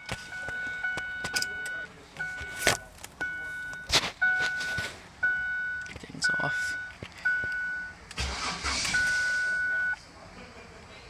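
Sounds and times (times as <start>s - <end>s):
car electronic warning chime: 0.0s - 10.0s.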